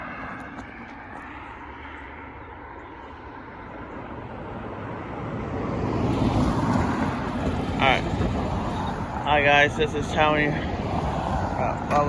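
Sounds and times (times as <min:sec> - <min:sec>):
freight train rumble: 0:06.0 - 0:12.0.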